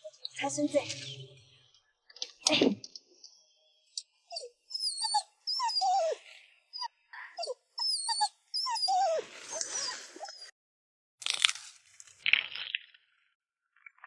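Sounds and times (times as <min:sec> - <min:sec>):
dog whining: 0:04.3 - 0:10.5.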